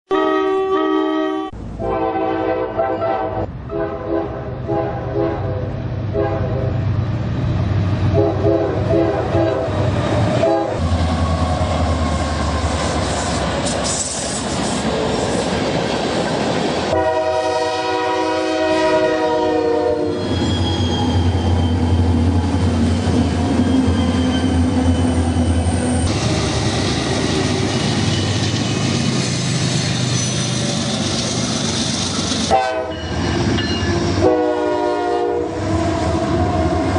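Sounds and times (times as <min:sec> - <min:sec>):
train horn blasts: 0:00.1 - 0:06.8, 0:08.1 - 0:09.7, 0:10.4 - 0:10.9, 0:16.9 - 0:20.3, 0:32.5 - 0:36.6
train rumbling on rails: 0:01.4 - 0:36.9.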